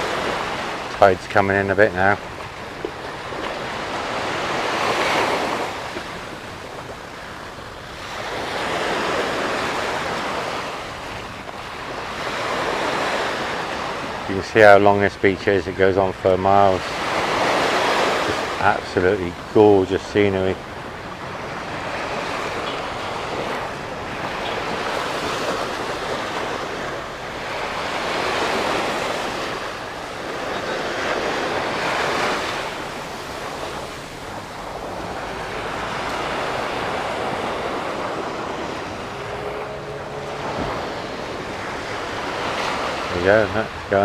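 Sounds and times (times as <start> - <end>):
small waves breaking on sand: 0.0 - 44.0
wind buffeting microphone: 16.9 - 44.0.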